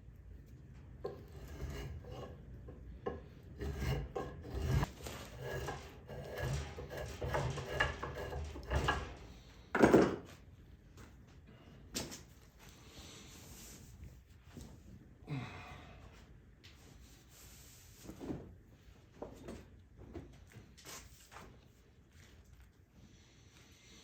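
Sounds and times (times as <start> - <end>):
hand tool shaving wood: 1.0 - 2.4, 3.1 - 9.2.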